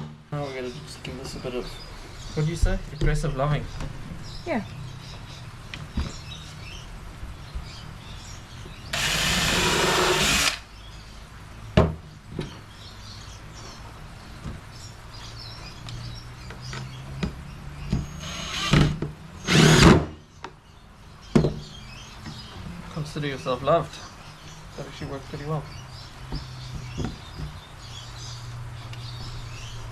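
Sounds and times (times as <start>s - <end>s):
power drill into wood: 9.0s - 10.7s, 18.2s - 20.1s.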